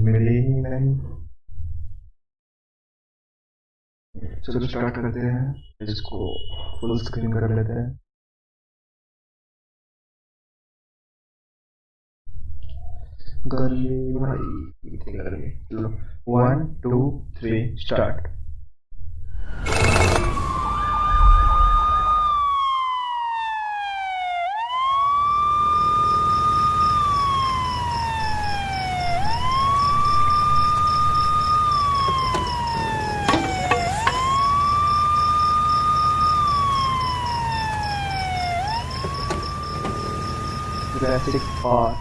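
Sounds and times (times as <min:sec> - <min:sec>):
siren wailing: 0:19.3 - 0:42.0
steady high-pitched tone: 0:25.3 - 0:42.0.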